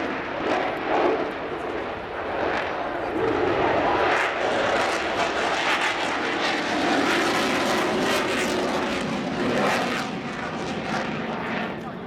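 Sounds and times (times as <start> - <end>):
aircraft engine noise: 0.0 - 12.0.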